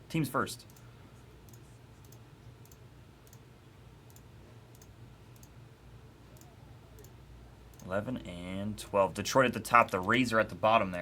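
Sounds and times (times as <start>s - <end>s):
low steady hum: 0.0s - 11.0s
computer mouse clicks: 0.6s - 3.4s, 4.1s - 5.6s.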